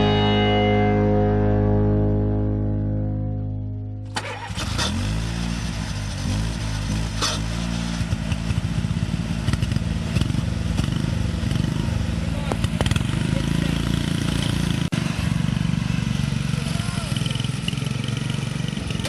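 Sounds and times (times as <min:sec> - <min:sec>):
background music: 0:00.0 - 0:04.2
lawn tractor engine running: 0:03.4 - 0:19.0.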